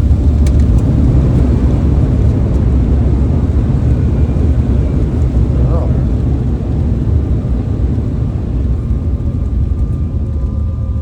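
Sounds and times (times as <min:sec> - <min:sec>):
jet engine cabin rumble: 0:00.0 - 0:11.0
faint steady tones: 0:03.5 - 0:11.0.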